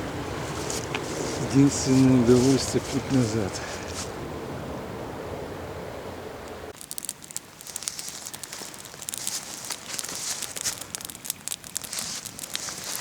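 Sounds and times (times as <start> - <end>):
steady hiss: 0.0 - 4.3, 6.4 - 13.0
rustling and crackling clicks: 0.4 - 3.2, 6.8 - 13.0.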